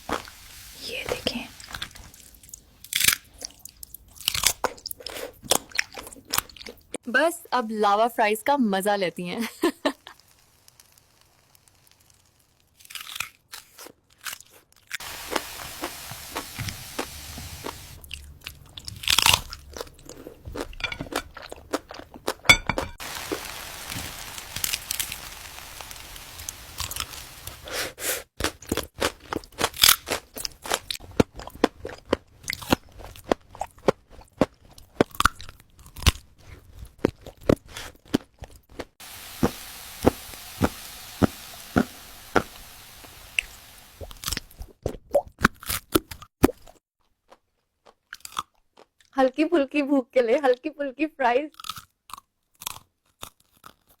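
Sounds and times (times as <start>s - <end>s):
crunching and chewing fries: 2.1s - 7.0s, 10.7s - 15.0s, 18.1s - 22.5s, 28.4s - 39.0s, 45.5s - 49.2s, 51.5s - 54.0s.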